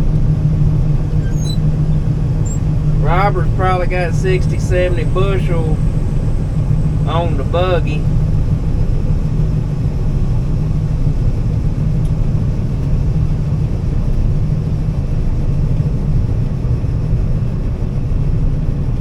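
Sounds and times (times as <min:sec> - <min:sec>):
combine harvester droning: 0:00.0 - 0:19.0.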